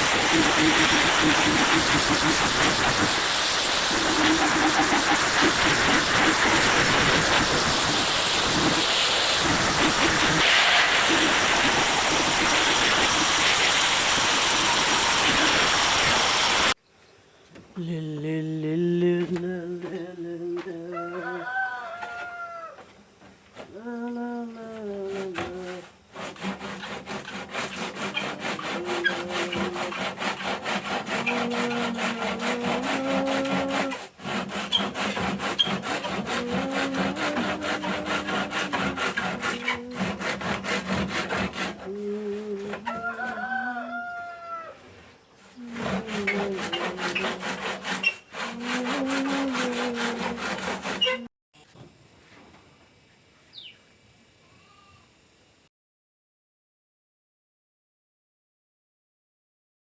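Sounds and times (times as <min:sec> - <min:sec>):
hand tool scraping wood: 0:00.0 - 0:16.8, 0:24.6 - 0:44.2, 0:45.0 - 0:51.3
pitched sliding tone: 0:28.0 - 0:30.2, 0:35.6 - 0:40.9, 0:45.6 - 0:51.3.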